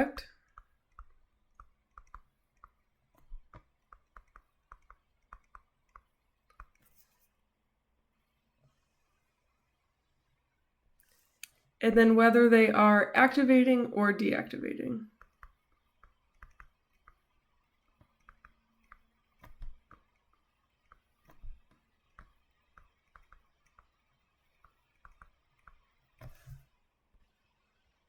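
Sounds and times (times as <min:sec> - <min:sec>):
pen writing clicks and taps: 0:00.4 - 0:07.3, 0:15.1 - 0:26.6.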